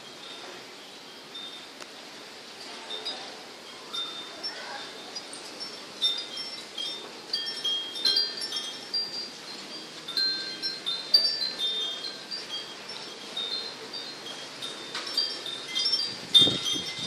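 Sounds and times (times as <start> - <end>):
storm wind hiss: 0.0 - 17.0
wind chimes ringing: 0.0 - 17.0.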